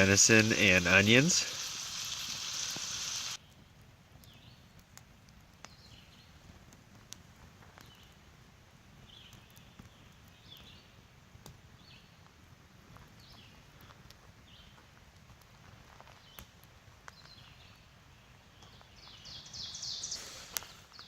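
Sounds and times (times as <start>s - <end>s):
meat sizzling in a frying pan: 0.0s - 3.4s.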